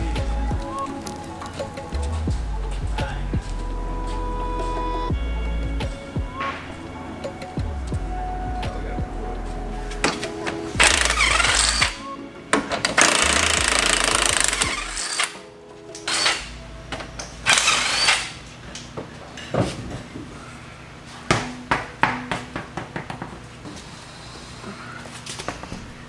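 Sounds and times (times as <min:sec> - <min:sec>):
impact wrench running in bursts: 0:10.8 - 0:12.0, 0:13.0 - 0:15.4, 0:17.5 - 0:18.4.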